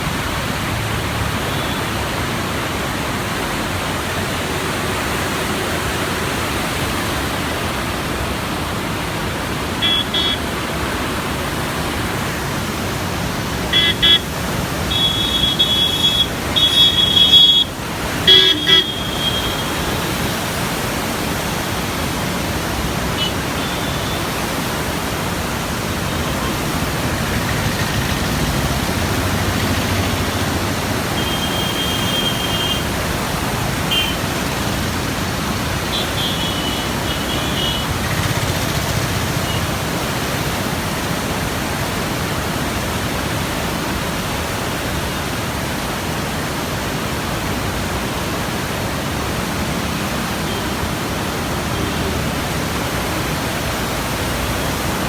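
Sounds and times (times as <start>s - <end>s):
floodwater rushing: 0.0s - 55.0s
high horn toots: 9.8s - 10.5s, 13.7s - 20.2s, 31.1s - 32.9s, 33.8s - 34.3s.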